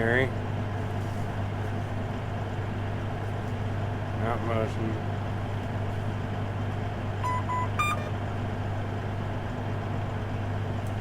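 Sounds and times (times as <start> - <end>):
display alert beeps: 7.2 - 8.1.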